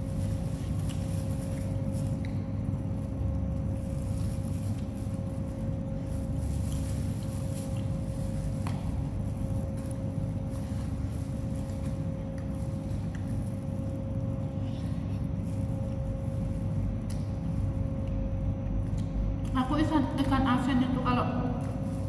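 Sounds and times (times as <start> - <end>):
constant hum: 0.0 - 22.0
low mechanical rumble: 0.0 - 22.0.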